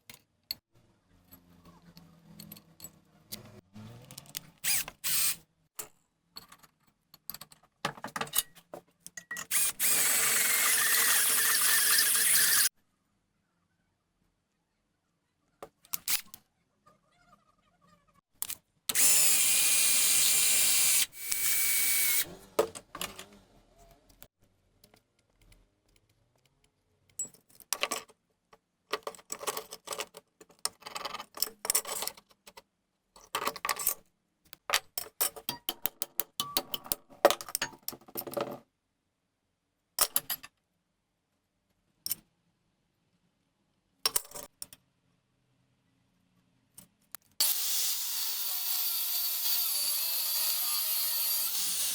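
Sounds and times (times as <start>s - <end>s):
power tool running: 9.5s - 12.7s, 18.9s - 23.4s, 47.4s - 51.9s.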